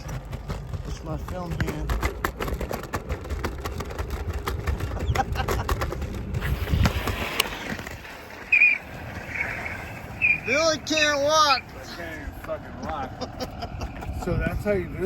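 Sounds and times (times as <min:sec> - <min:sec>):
scooter wheels rumbling on pavement: 0:00.0 - 0:15.0.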